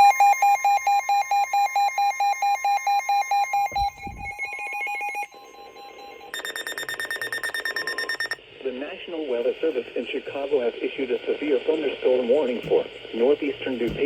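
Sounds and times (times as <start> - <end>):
fast-pulsing electronic beeps: 3.7 - 8.4.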